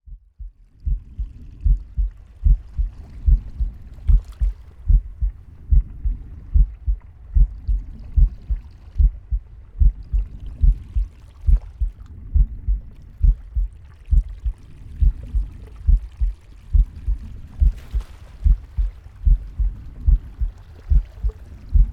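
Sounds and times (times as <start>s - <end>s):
heartbeat thumps: 0.0s - 21.9s
soft low rushing: 0.0s - 21.9s.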